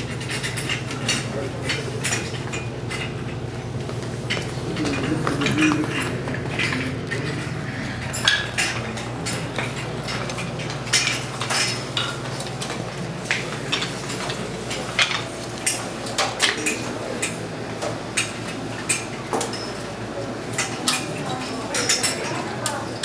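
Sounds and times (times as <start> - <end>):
steady low hum: 0.0 - 15.7
dishes and cutlery clinking: 0.0 - 23.0.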